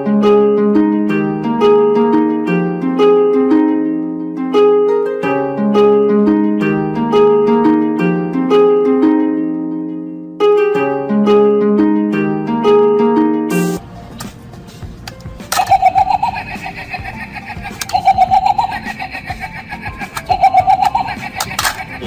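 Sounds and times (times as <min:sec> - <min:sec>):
plucked string arpeggios: 0:00.0 - 0:22.0.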